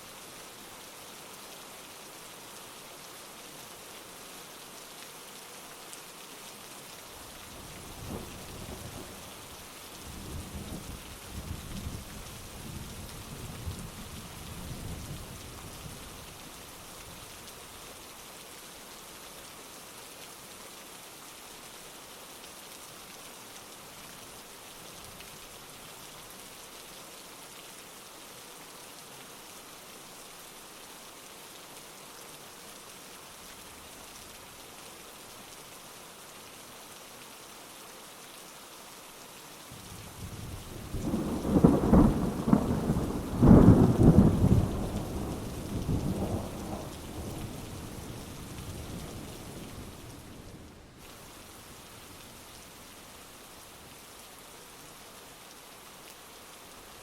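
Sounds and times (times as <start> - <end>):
heavy rain hissing: 39.4 - 57.0
thunder rumbling: 40.2 - 48.1.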